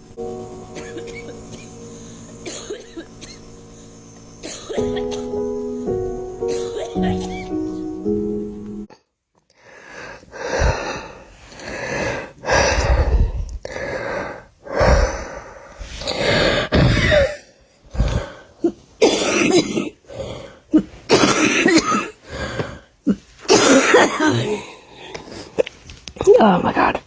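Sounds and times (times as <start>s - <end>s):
person coughing: 2.4s - 3.4s, 4.4s - 5.3s, 6.5s - 7.5s, 16.7s - 20.0s, 20.7s - 24.8s.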